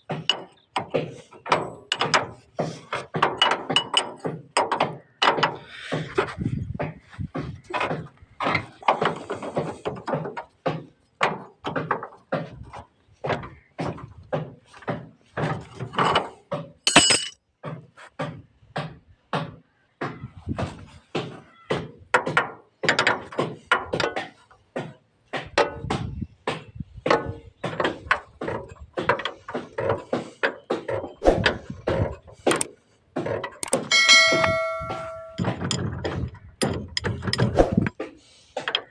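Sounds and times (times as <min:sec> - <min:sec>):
metal knocks and clanks: 0:00.0 - 0:02.4, 0:03.0 - 0:14.3, 0:33.3 - 0:38.0
high-pitched ringing: 0:33.7 - 0:35.5.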